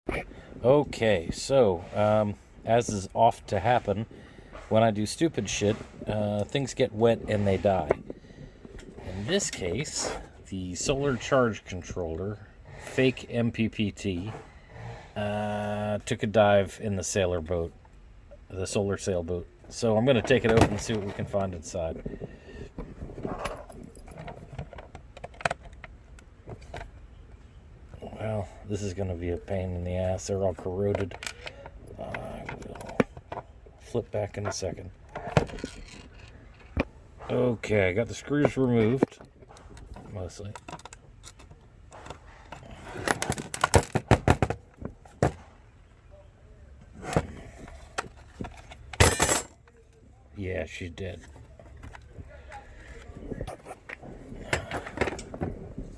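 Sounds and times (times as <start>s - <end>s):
plastic case clicks and knocks: 43.2s - 45.4s.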